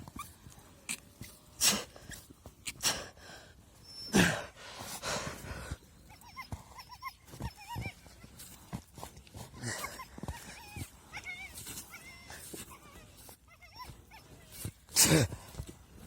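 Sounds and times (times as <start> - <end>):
dogs whining: 3.8 - 4.4, 5.7 - 14.9.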